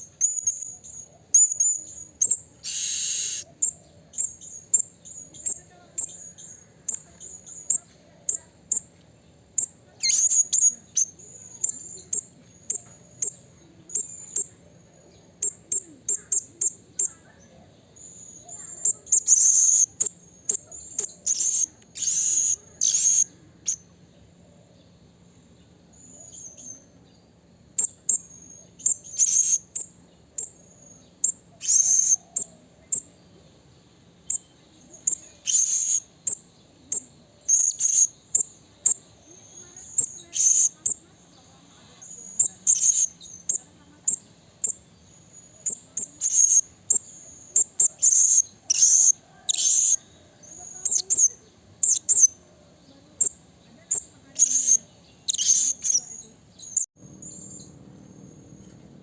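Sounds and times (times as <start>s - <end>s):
parrot high-pitched chirps: 0.0s - 8.8s, 9.6s - 14.6s, 18.0s - 23.8s, 27.8s - 30.6s, 31.2s - 33.1s, 34.3s - 41.1s, 42.0s - 44.8s, 45.6s - 52.4s, 53.2s - 57.6s.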